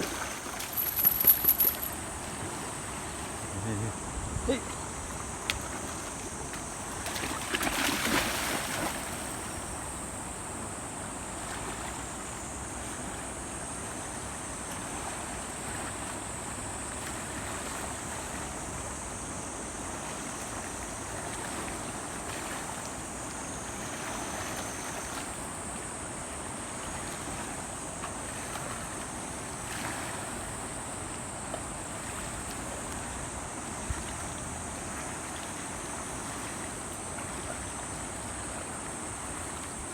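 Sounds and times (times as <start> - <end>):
river rushing: 0.0 - 3.6.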